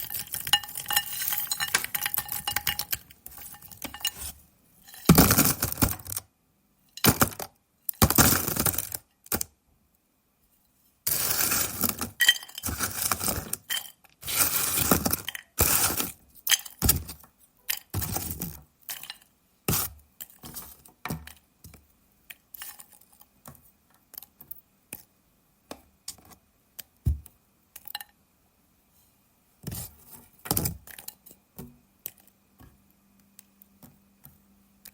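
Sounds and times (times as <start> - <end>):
fries clattering into a bowl: 0.0 - 6.2, 11.1 - 19.9.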